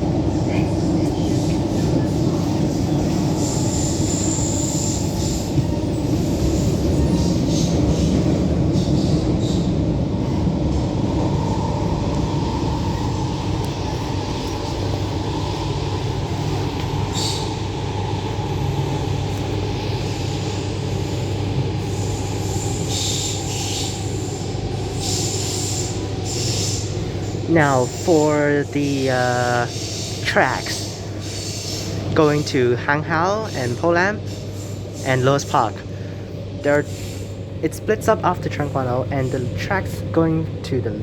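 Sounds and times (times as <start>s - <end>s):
steady train hum: 0.0s - 41.0s
train wheels rumbling on rails: 0.0s - 41.0s.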